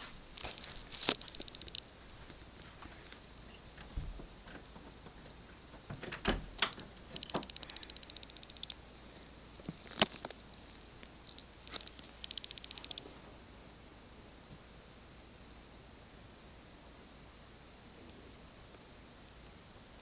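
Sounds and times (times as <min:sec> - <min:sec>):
rapid high clicking: 0:00.5 - 0:01.9, 0:06.6 - 0:08.8, 0:10.0 - 0:13.1.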